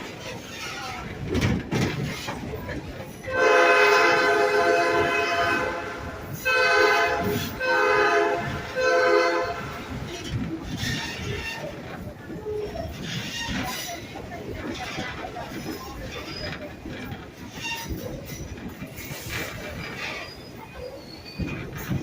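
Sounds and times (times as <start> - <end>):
train cars rumbling on rails: 0.0 - 22.0
train horn blasts: 3.2 - 10.1.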